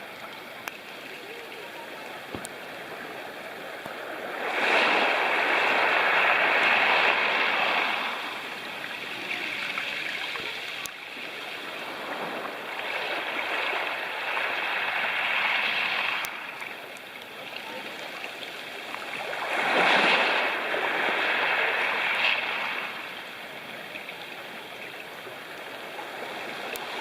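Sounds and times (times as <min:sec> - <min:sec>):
waves washing on pebble beach: 0:02.1 - 0:23.6.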